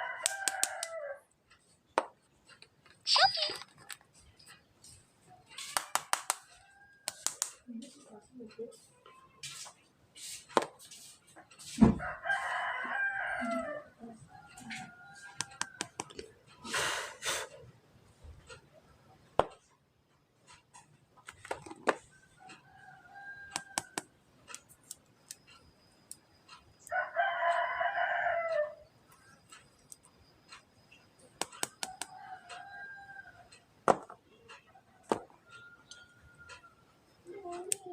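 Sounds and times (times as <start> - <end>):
rooster crowing: 0.0 - 1.3, 11.9 - 16.0, 22.5 - 24.0, 26.8 - 28.9, 31.8 - 33.5
sharp clicks: 0.2 - 0.9, 5.6 - 7.6, 15.4 - 16.3, 31.4 - 32.1
thump: 11.8 - 12.0.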